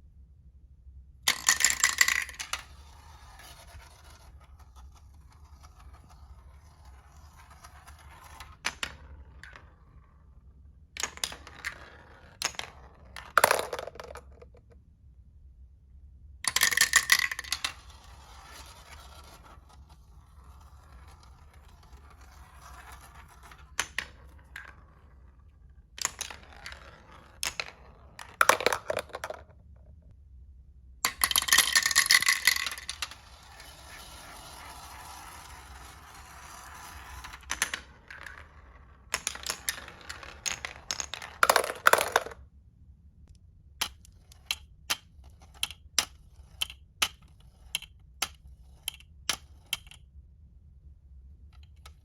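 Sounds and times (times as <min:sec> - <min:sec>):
marbles clattering down a run: 0:01.3 - 0:02.8, 0:11.0 - 0:14.6, 0:16.5 - 0:18.8, 0:26.0 - 0:29.5, 0:31.1 - 0:42.4.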